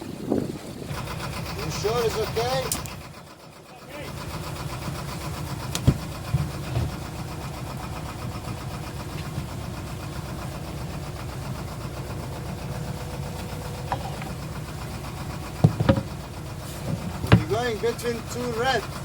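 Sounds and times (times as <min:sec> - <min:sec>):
boat engine low throb: 0:00.0 - 0:19.0
short knocks: 0:15.5 - 0:17.8.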